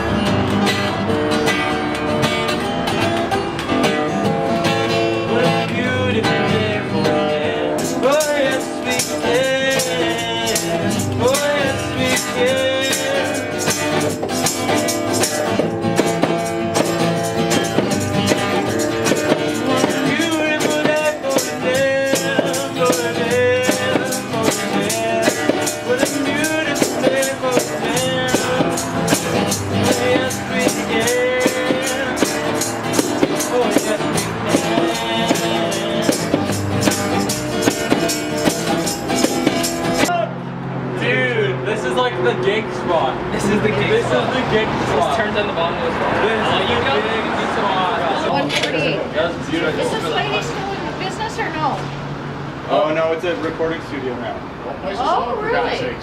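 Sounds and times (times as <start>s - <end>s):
strummed acoustic guitars: 0.0s - 56.0s
tambourine shaken: 7.8s - 40.1s
person singing: 19.1s - 36.6s.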